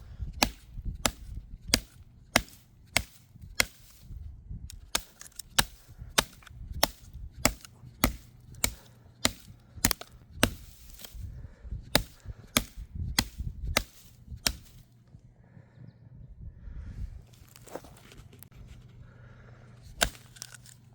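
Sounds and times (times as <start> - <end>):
knife chopping wood: 0.0 - 11.3, 11.9 - 14.9, 19.9 - 20.8.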